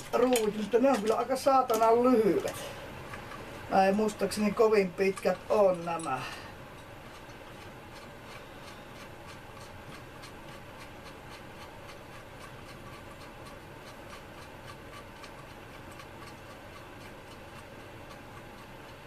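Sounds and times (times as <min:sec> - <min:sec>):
faint regular ticking: 0:00.0 - 0:19.0
low background hum: 0:00.0 - 0:19.0.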